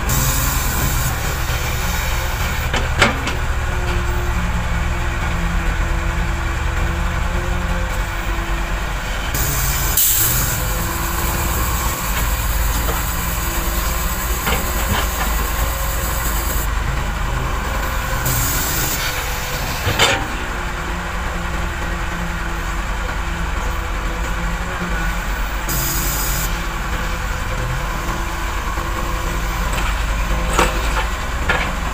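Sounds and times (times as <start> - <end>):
hiss: 0.0 - 3.0, 9.2 - 16.7, 17.6 - 20.5, 25.0 - 31.3
diesel machinery running: 0.0 - 31.9.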